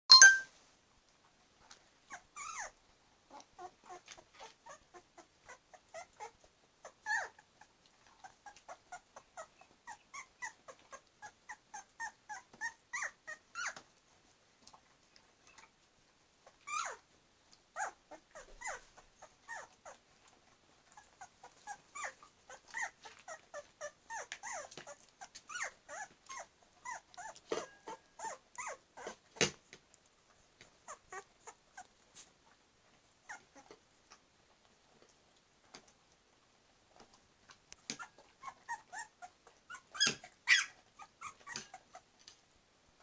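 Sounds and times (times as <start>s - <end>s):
puppies whimpering and squeaking: 2.1s - 13.8s, 16.4s - 17.1s, 17.8s - 20.0s, 20.9s - 29.2s, 30.8s - 32.3s, 33.3s - 33.8s, 37.8s - 42.1s.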